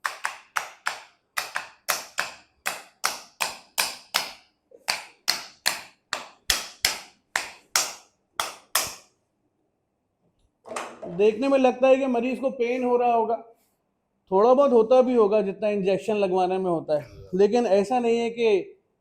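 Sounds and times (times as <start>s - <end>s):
hammer tapping on muscles: 0.0s - 9.1s.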